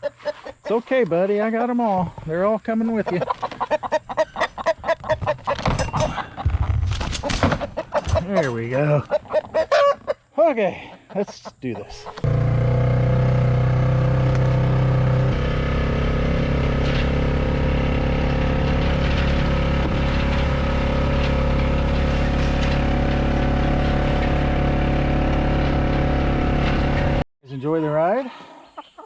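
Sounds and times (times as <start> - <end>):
tractor engine running: 12.0 - 27.2.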